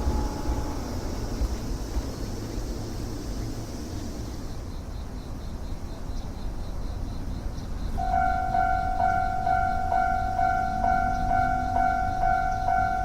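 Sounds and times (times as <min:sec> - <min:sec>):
railroad crossing bell clanging: 0:00.0 - 0:01.8, 0:08.0 - 0:13.0
low rumble: 0:00.0 - 0:03.8.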